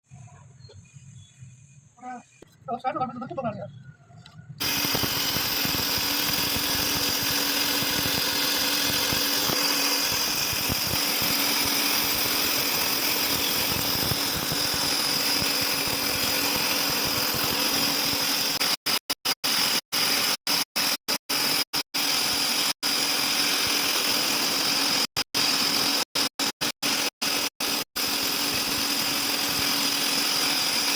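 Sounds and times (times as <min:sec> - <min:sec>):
power tool whirring with whine: 0:04.6 - 0:30.9.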